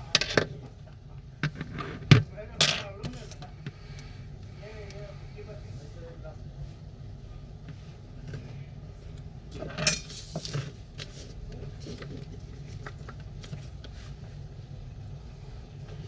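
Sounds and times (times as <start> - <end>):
steady low hum: 0.0 - 16.0
rattle and scrape: 9.5 - 14.3.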